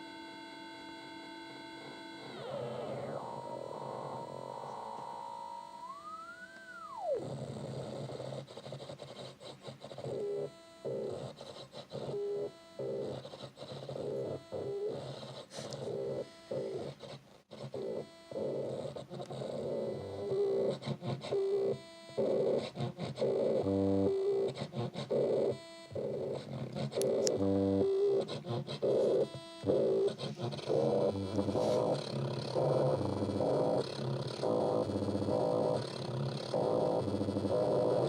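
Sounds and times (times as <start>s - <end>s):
low synthesizer drone: 0.0s - 8.2s, 23.2s - 38.0s
synthesizer pitch swoop: 0.4s - 7.4s, 27.0s - 38.0s
stuttering synthesizer tones: 0.6s - 8.9s, 10.0s - 38.0s.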